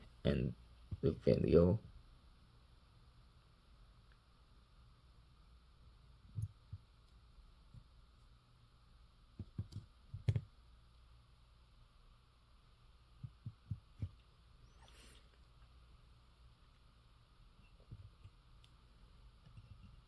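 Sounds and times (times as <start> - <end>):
low room hum: 0.0 - 20.0
soft handling knocks and taps: 9.4 - 10.5, 13.2 - 14.2.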